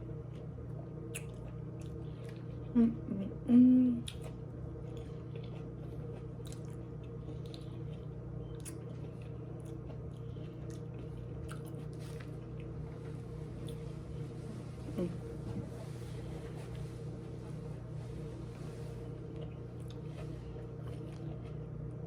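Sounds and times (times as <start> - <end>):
person chewing: 1.1 - 2.7, 4.0 - 12.8, 19.2 - 21.7.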